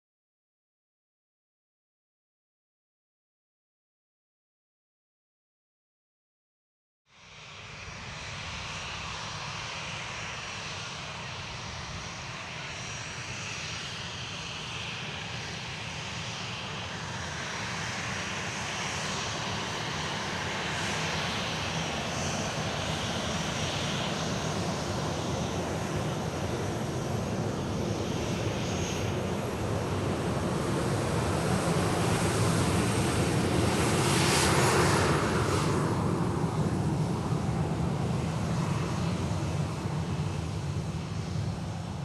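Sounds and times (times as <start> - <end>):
jet engines roaring: 8.0 - 42.0.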